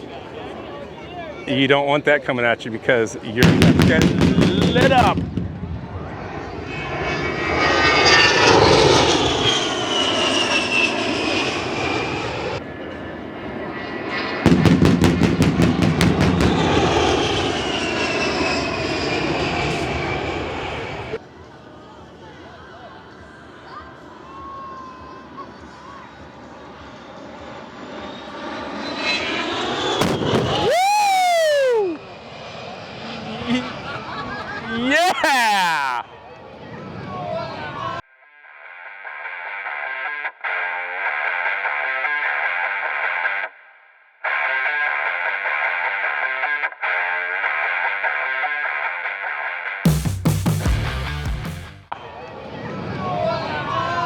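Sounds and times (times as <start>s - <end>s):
jet engines low pass: 3.1s - 34.7s
sharp pyrotechnic bangs: 3.4s - 6.2s, 14.5s - 19.0s, 30.0s - 30.7s
high whine falling in pitch: 14.5s - 19.8s, 30.0s - 32.0s.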